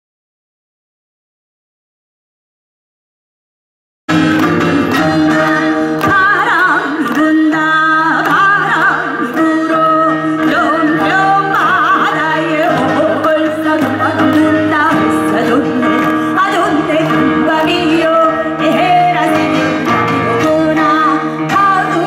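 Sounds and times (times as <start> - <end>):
traditional music with bent melodies: 4.1 - 22.0.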